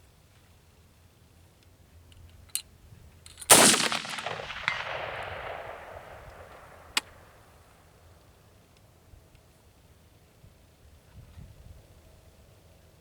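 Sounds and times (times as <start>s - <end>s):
rifle shot with echo: 3.5s - 7.7s.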